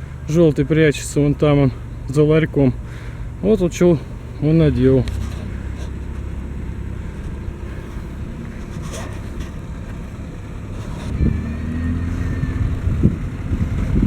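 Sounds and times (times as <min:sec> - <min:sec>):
engine rumbling: 0:00.0 - 0:14.0
loud steady engine: 0:00.0 - 0:14.0
wind on microphone: 0:11.0 - 0:14.0.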